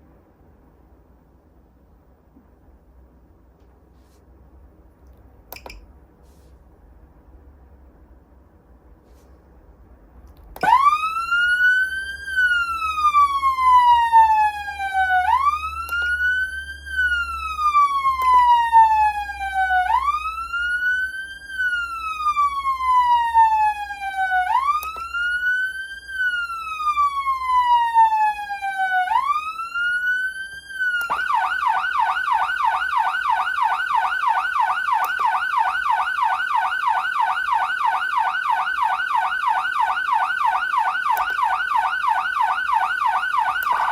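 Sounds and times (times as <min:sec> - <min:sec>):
electronic siren wailing: 0:10.6 - 0:43.9
siren fast yelp: 0:10.6 - 0:43.9.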